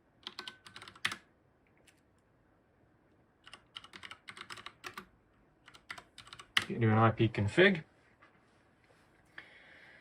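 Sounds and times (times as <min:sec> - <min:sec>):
typing on computer keyboard: 0:00.2 - 0:01.3, 0:03.4 - 0:06.8.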